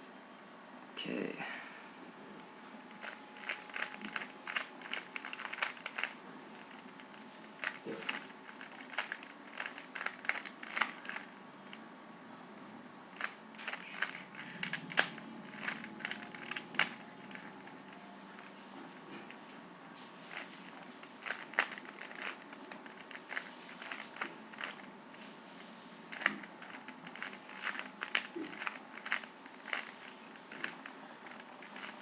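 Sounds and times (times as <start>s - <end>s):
puzzle cube layers clicking: 3.0s - 6.8s, 7.6s - 11.3s, 13.2s - 17.6s, 21.2s - 24.9s, 26.1s - 32.0s.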